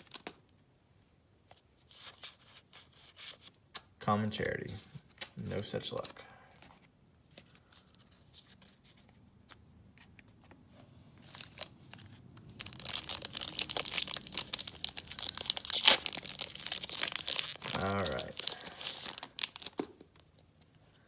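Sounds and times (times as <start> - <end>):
foil wrapper tearing and crinkling: 11.3 - 20.0.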